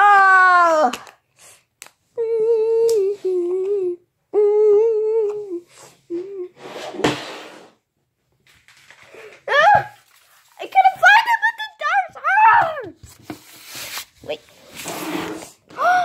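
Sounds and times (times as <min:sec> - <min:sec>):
child humming a tune: 0:02.2 - 0:06.6.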